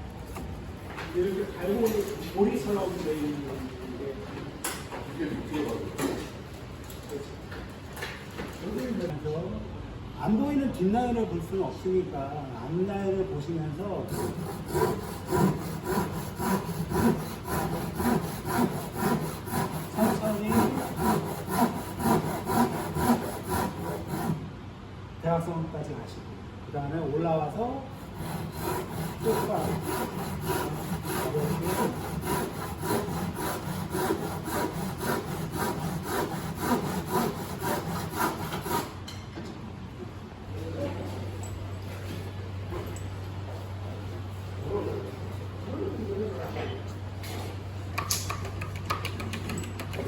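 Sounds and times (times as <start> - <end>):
hand saw cutting wood: 14.1 - 24.4, 28.0 - 39.0.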